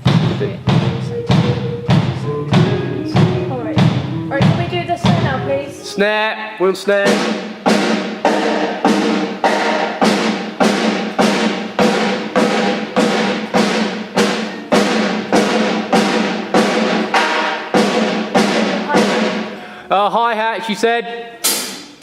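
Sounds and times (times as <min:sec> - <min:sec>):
snare drum hits: 0:00.0 - 0:05.4, 0:07.0 - 0:19.5, 0:21.4 - 0:22.0.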